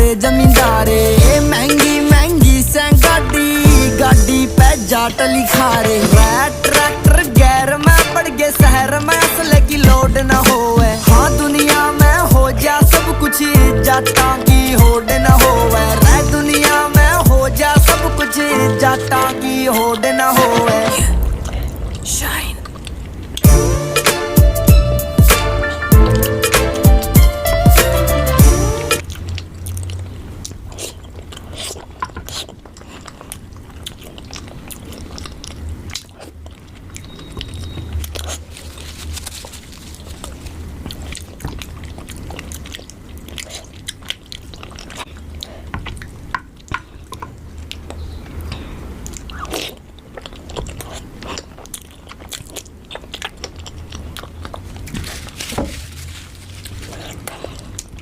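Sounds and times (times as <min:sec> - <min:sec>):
steady low hum: 0:00.0 - 0:05.2, 0:05.9 - 0:19.4, 0:21.0 - 0:29.2
person chewing and crunching: 0:00.0 - 0:58.0
wet mouth clicks: 0:06.7 - 0:18.3, 0:29.0 - 0:54.9, 0:56.9 - 0:58.0.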